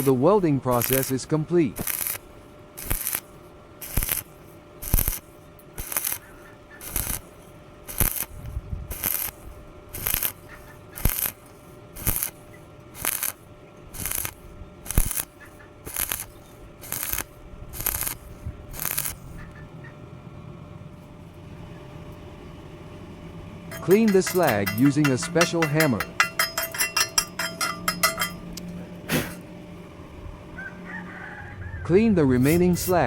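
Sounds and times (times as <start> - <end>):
welding arc crackling: 0.0 - 19.4, 23.7 - 29.4, 32.4 - 33.0.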